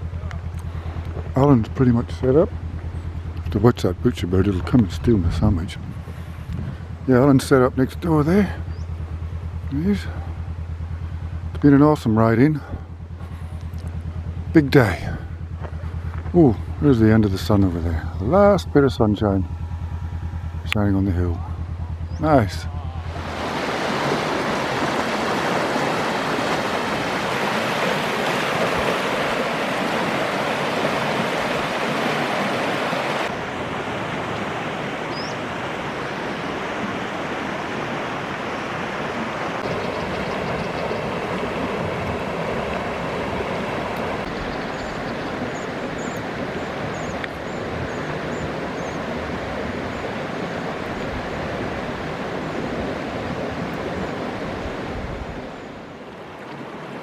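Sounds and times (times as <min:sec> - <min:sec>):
river water over rocks: 0:23.0 - 0:57.0.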